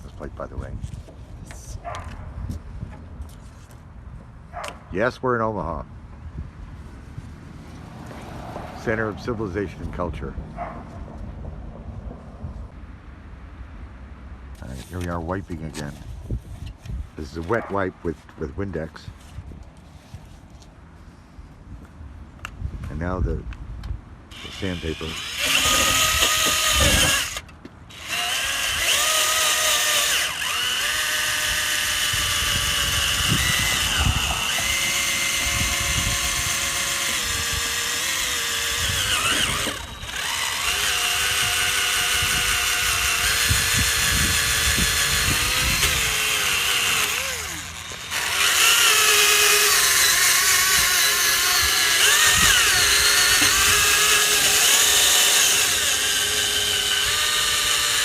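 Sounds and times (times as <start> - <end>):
electric drill sanding plastic: 24.3 - 58.0.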